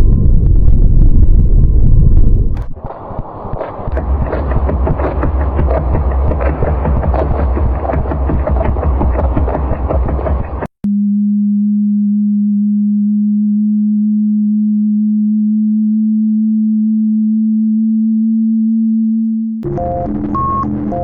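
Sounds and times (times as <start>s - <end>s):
dense noisy rumble: 0.0s - 10.7s
steady low pure tone: 0.0s - 21.0s.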